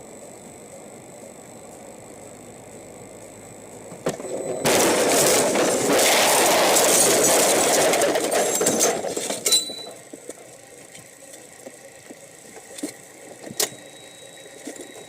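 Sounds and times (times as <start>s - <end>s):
vehicle crash noise: 4.0s - 10.0s
sharp crack: 4.7s - 9.0s.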